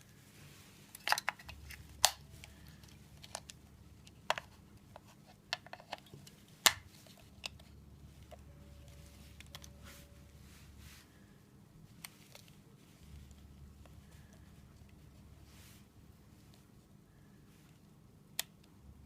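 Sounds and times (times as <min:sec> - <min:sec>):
plastic parts clicking and tapping: 0:00.9 - 0:08.4.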